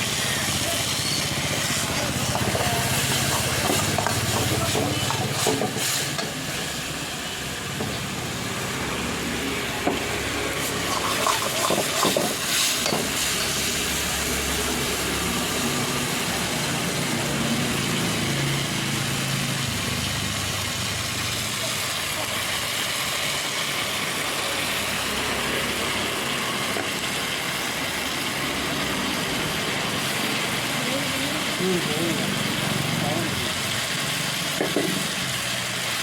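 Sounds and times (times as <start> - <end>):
chicken sizzling in a pan: 0.0 - 36.0
ladle scraping a pan: 0.8 - 6.4, 10.6 - 13.7.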